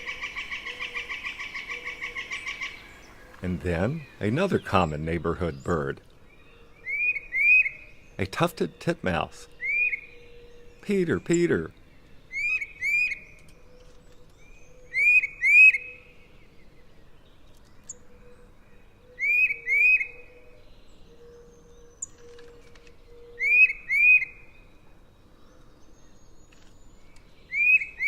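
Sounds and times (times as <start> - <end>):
bird whistling song: 6.4 - 8.2, 9.5 - 10.8, 12.2 - 16.2, 19.1 - 24.7, 25.9 - 28.0.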